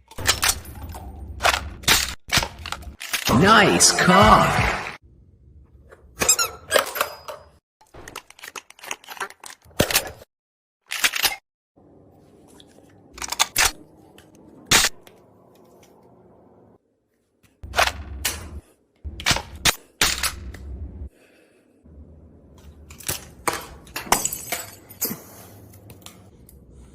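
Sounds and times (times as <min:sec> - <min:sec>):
gun magazines clicking and clacking: 0:08.1 - 0:10.0
background hum: 0:11.8 - 0:26.9.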